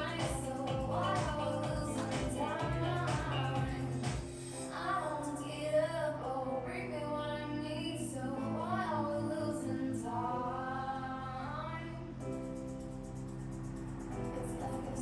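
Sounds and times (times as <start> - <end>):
person singing with wavering notes: 0.0 - 12.2
steady musical accompaniment: 0.0 - 15.0.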